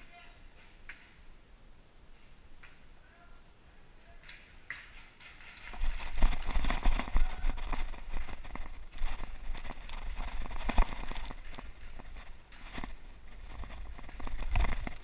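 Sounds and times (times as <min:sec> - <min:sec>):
running footfalls: 0:04.3 - 0:15.0.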